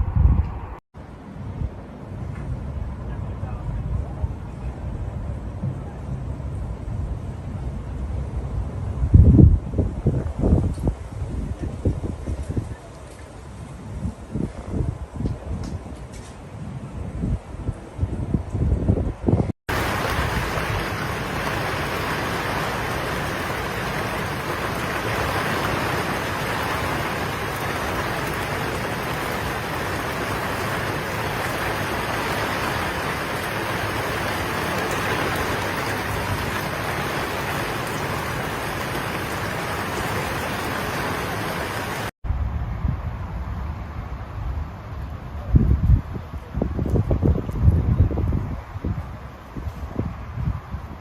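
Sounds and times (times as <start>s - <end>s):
wind rumbling on microphone: 0.0s - 51.0s
heavy rain pouring: 19.7s - 42.1s.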